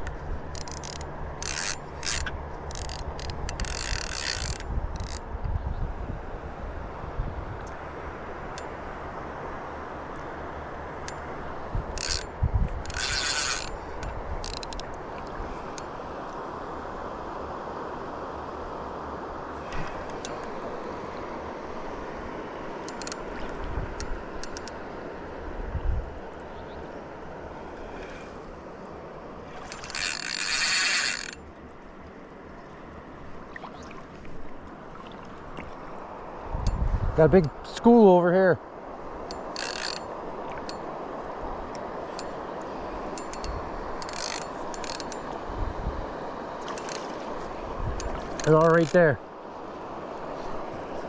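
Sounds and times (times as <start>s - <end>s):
fishing reel whirring: 0.5s - 5.2s, 11.8s - 15.0s, 29.5s - 31.4s, 39.3s - 40.8s, 43.0s - 45.4s
river water rushing: 7.7s - 36.6s, 37.2s - 51.0s.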